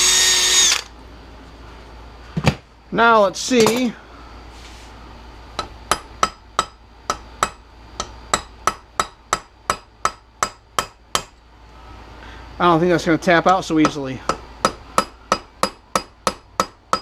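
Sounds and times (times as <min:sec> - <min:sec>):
hammer tapping on metal: 0:13.8 - 0:17.0.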